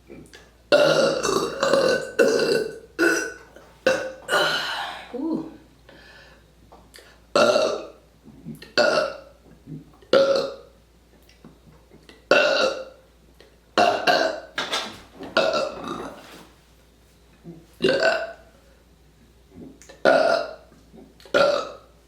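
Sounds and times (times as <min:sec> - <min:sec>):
person burping: 0:00.0 - 0:05.6, 0:07.3 - 0:09.3, 0:10.1 - 0:10.6, 0:12.3 - 0:13.0, 0:13.8 - 0:14.5, 0:15.4 - 0:16.2, 0:17.8 - 0:18.4, 0:20.0 - 0:21.9.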